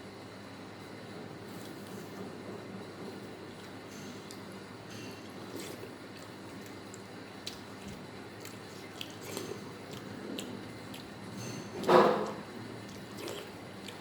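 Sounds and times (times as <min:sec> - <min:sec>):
steady low hum: 0:00.0 - 0:14.0
wet chewing with mouth clicks: 0:03.5 - 0:14.0.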